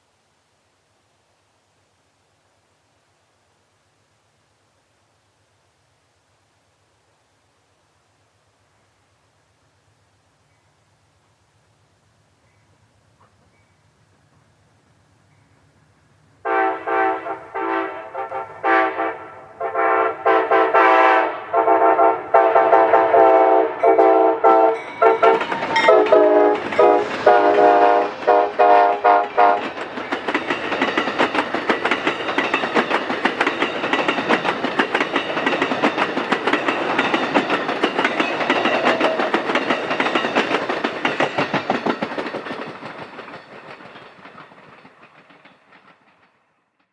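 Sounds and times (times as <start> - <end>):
locomotive horn blasts: 16.4 - 29.6
train cars clacking on rails: 16.5 - 46.9.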